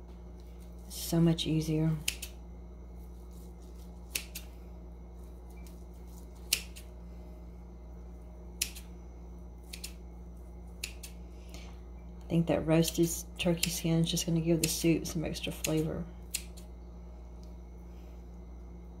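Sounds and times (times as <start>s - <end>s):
steady low hum: 0.0s - 19.0s
shears snipping: 2.0s - 2.4s, 3.2s - 4.6s, 5.5s - 6.9s, 8.6s - 8.9s, 9.6s - 10.0s, 10.7s - 11.2s, 12.6s - 16.7s.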